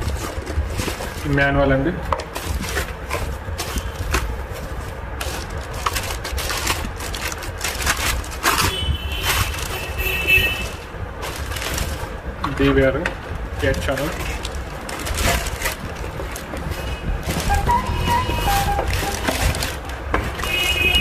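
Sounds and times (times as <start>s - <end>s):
hands handling packaging: 0.0s - 21.0s
high squeak: 16.8s - 19.6s.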